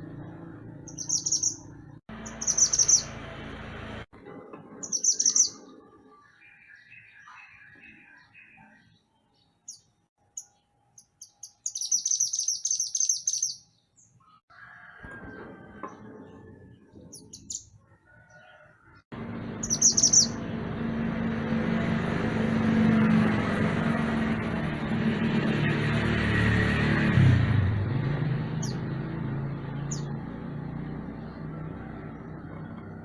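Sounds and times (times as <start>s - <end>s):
songbird chirping and trilling: 0.2s - 3.2s, 4.8s - 14.5s, 15.8s - 20.4s, 28.5s - 33.0s.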